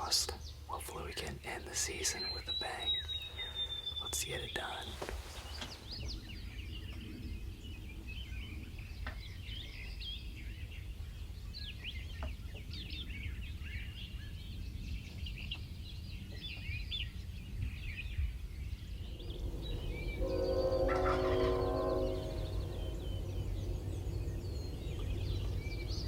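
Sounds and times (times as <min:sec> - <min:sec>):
songbirds chirping and whistling: 0:00.0 - 0:26.0
steady low rumble: 0:17.3 - 0:26.0.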